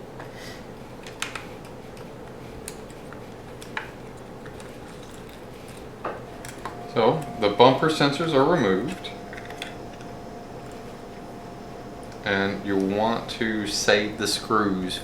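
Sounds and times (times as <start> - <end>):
low steady hum: 4.5 - 15.0.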